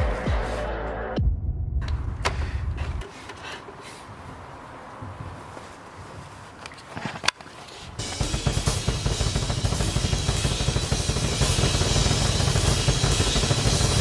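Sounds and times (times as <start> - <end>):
loud music with drum beat: 0.0 - 1.2, 8.0 - 14.0.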